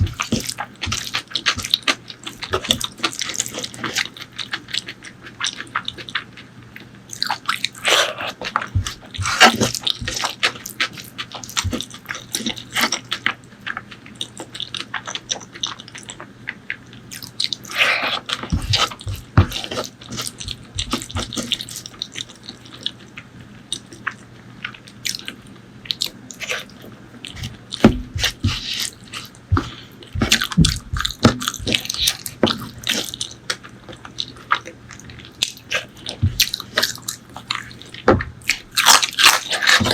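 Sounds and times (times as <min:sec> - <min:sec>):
faint steady hum: 0:00.0 - 0:39.9
wet chewing and lip-smacking: 0:00.0 - 0:39.9.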